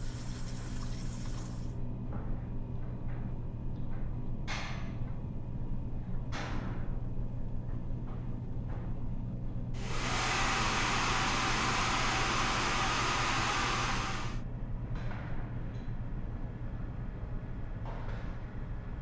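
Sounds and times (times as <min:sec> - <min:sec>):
electric hand dryer blowing: 0:09.8 - 0:14.4.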